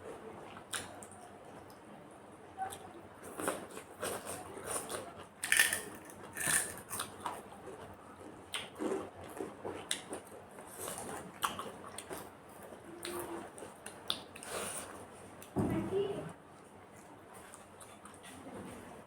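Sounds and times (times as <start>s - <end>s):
crunching crisp food: 3.3s - 7.9s.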